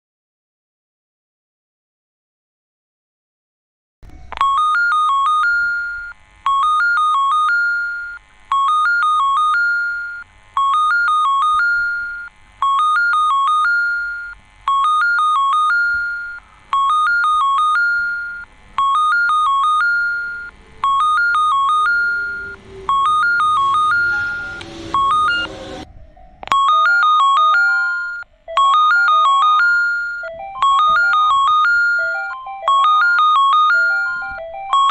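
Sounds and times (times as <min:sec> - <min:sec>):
electronic train approach chime: 0:15.0 - 0:34.9
faint falling tone: 0:19.7 - 0:28.2.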